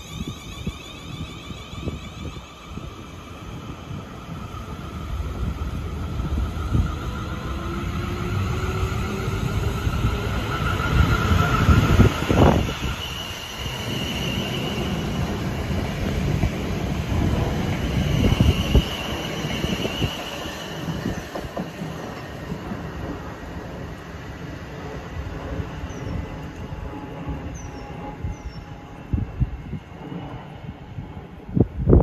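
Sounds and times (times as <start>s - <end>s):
high-pitched wheel squeal: 0.0s - 3.7s, 8.6s - 16.2s, 17.5s - 21.5s
train rumbling past: 0.0s - 32.0s.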